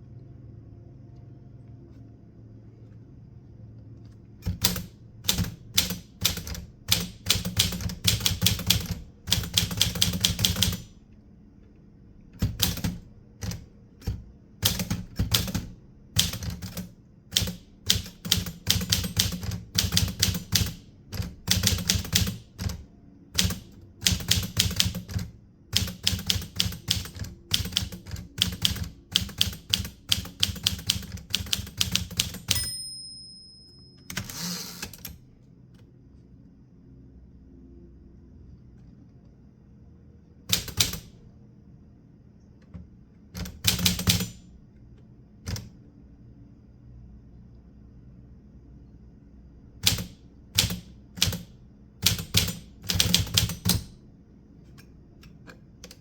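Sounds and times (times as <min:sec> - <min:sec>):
typewriter keystrokes: 0:04.4 - 0:11.0, 0:12.4 - 0:32.8, 0:34.1 - 0:35.2, 0:40.5 - 0:41.2, 0:43.4 - 0:44.5, 0:45.5 - 0:45.7, 0:49.8 - 0:54.0
typewriter bell ring: 0:32.1 - 0:34.6.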